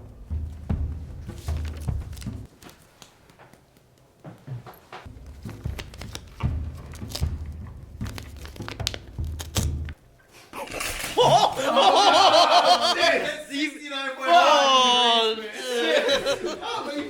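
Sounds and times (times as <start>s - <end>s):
paper tearing: 5.3s - 10.0s.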